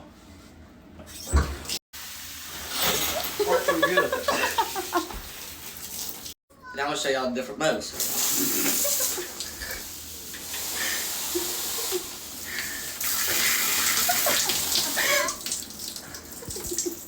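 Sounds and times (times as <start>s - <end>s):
shower head spraying water: 2.0s - 6.4s, 7.9s - 17.0s.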